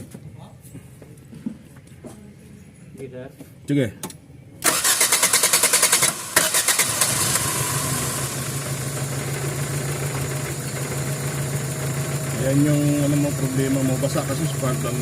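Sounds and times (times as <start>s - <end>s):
car engine cranking: 4.6s - 15.0s
car engine idling: 4.7s - 15.0s.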